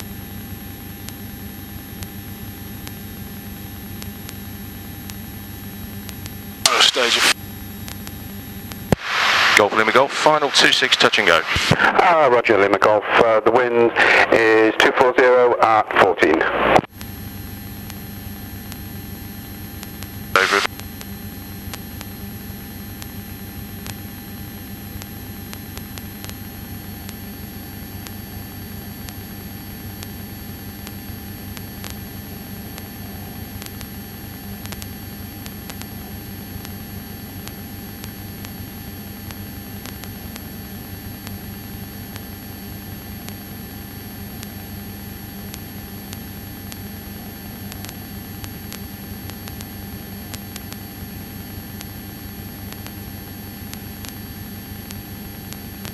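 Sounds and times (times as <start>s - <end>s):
constant hiss: 9.0s - 12.3s, 20.4s - 20.7s
faint clicks: 47.7s - 49.7s.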